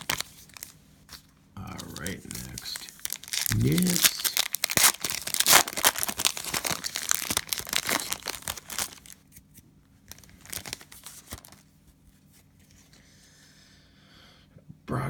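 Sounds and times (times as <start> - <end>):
plastic wrapper tearing and crinkling: 0.0 - 9.4, 10.0 - 11.7.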